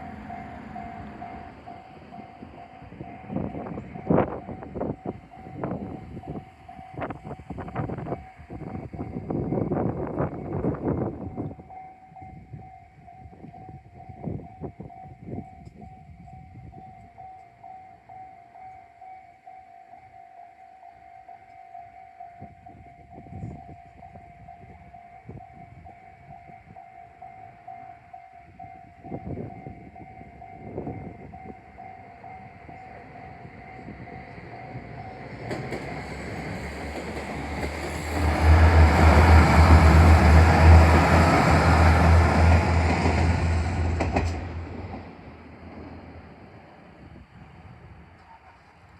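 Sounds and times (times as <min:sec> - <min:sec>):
diesel train engine rumble: 0:00.0 - 0:11.8, 0:29.0 - 0:48.9
train wheel noise on rails: 0:00.0 - 0:19.0, 0:22.4 - 0:48.9.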